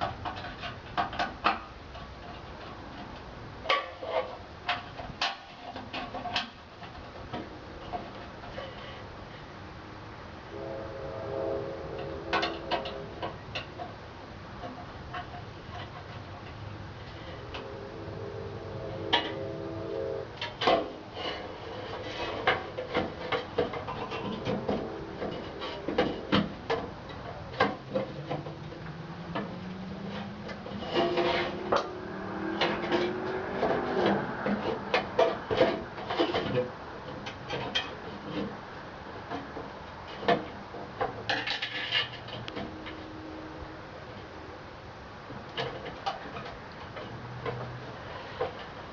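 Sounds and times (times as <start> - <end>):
irregular clicks and knocks: 0.0 - 8.7
rubbing and scraping: 14.6 - 38.6.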